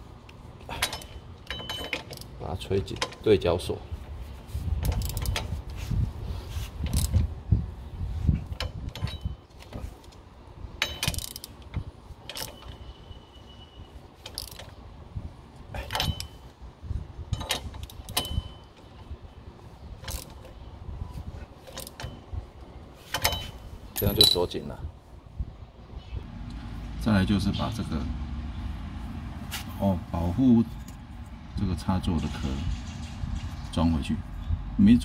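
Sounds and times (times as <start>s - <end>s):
rumbling handling noise: 0.0s - 13.2s, 13.8s - 35.0s
ratchet wrench metallic clicks: 0.8s - 3.3s, 6.9s - 7.2s, 10.8s - 12.8s, 14.2s - 14.7s, 20.0s - 20.5s, 23.1s - 24.5s.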